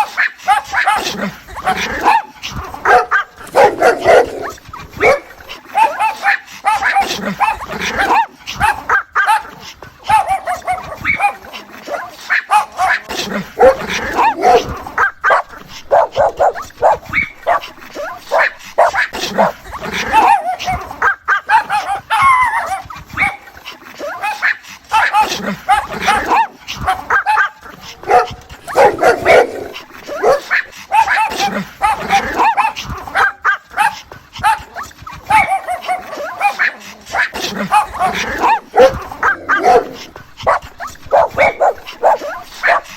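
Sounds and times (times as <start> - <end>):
dog barking: 0.0 - 23.4, 24.0 - 42.9
dog whining and yipping: 10.1 - 11.4, 14.4 - 19.1, 32.4 - 36.7, 38.4 - 42.9.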